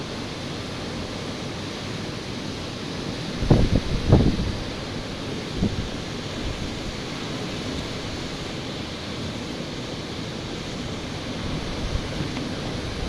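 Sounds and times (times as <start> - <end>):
ocean surf washing on beach: 0.0 - 13.0
wind on microphone: 3.3 - 8.5, 10.6 - 13.0.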